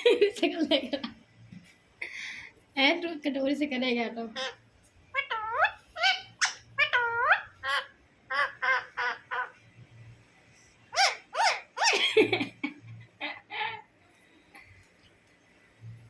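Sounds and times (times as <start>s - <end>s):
parrot calling: 4.3s - 9.6s, 10.9s - 12.3s, 13.2s - 13.9s.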